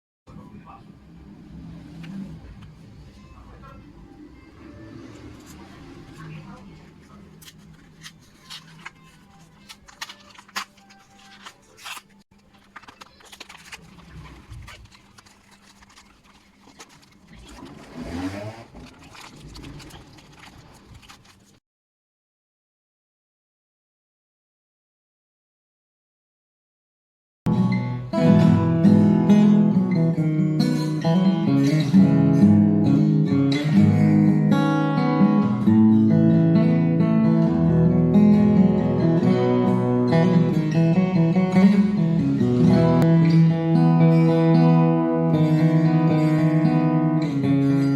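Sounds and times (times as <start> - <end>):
acoustic guitar chords strummed: 27.5 - 47.9.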